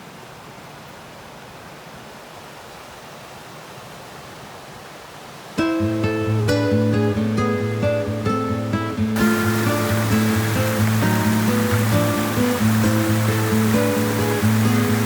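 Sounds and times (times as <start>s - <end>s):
acoustic guitar music: 5.6s - 15.0s
waterfall rushing: 9.2s - 15.0s.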